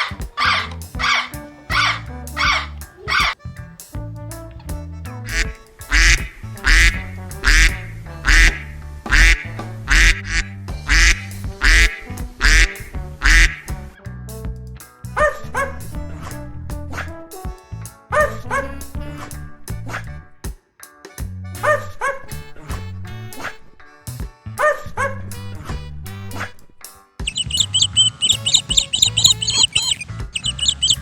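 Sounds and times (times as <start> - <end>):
duck quacking: 0.0 - 3.4, 5.2 - 13.7, 27.3 - 31.0
higher-pitched duck calls: 0.0 - 3.4, 5.2 - 13.7, 27.3 - 31.0
background music: 0.0 - 31.0.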